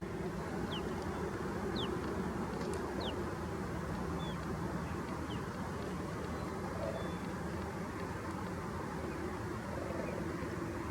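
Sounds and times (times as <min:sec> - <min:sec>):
cormorant colony calling: 0:00.6 - 0:02.0, 0:03.0 - 0:03.2
whistled bird calls: 0:06.8 - 0:07.3.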